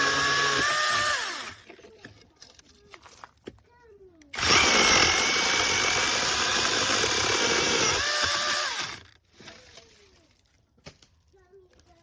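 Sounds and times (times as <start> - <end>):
mini chainsaw whining: 0.0 - 1.7, 4.3 - 9.8.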